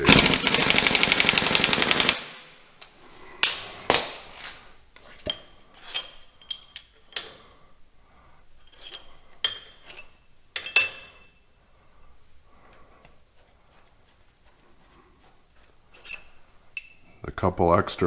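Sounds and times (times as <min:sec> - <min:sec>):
tools clinking against metal: 0:05.2 - 0:07.6, 0:08.6 - 0:11.5, 0:15.6 - 0:17.2
light rubbing: 0:12.5 - 0:17.1.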